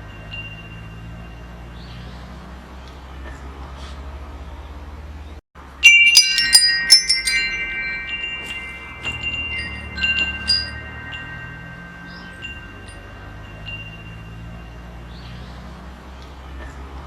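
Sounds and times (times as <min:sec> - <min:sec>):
metal wind chimes ringing: 0:00.0 - 0:02.6, 0:05.6 - 0:16.1.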